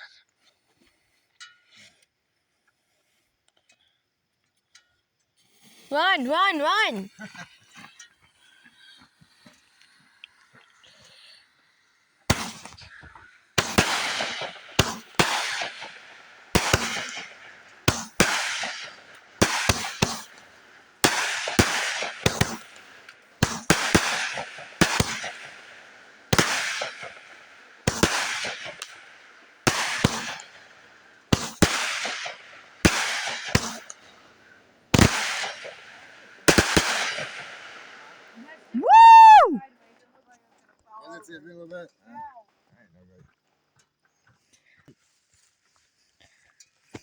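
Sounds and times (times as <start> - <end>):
fireworks crackling: 5.6 - 8.5, 12.3 - 39.5
fireworks bangs: 5.9 - 7.1, 12.3 - 39.4.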